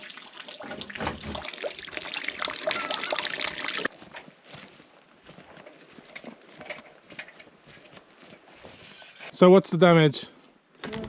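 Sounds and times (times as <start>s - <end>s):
water trickling and pouring: 0.0s - 3.9s.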